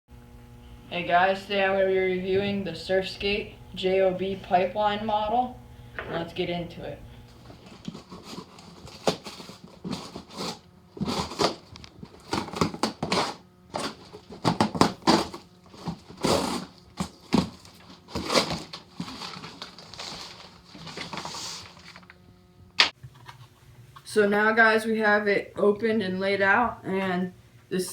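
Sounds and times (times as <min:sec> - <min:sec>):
packaging rustling and crinkling: 0:07.3 - 0:22.3.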